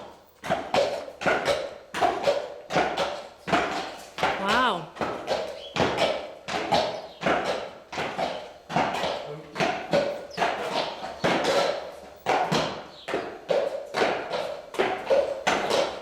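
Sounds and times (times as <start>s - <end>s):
hooves clopping on hard floor: 0.0s - 16.0s.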